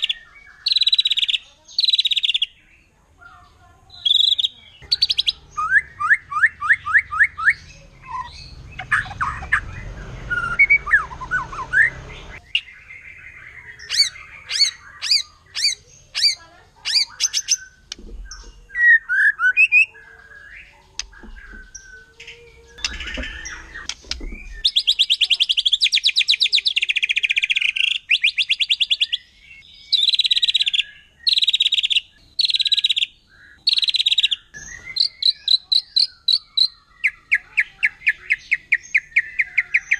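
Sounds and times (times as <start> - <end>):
songbird whistles and trills: 4.0 - 39.9
bird harsh rattling phrases: 20.9 - 26.0.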